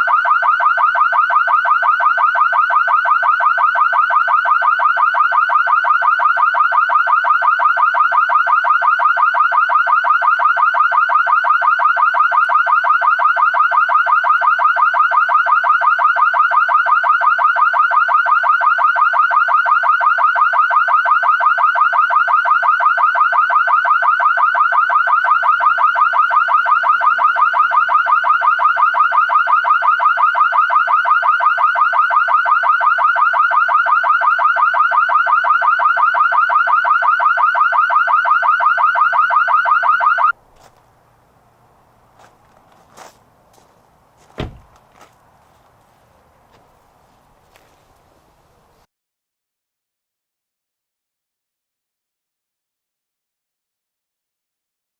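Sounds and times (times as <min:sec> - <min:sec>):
car alarm chirping: 0:00.0 - 0:40.4.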